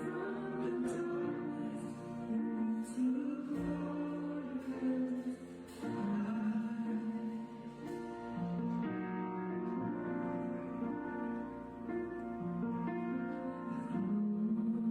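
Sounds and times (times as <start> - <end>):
voices singing held notes: 0.0 - 8.3
worship band playing slow song: 0.0 - 14.9.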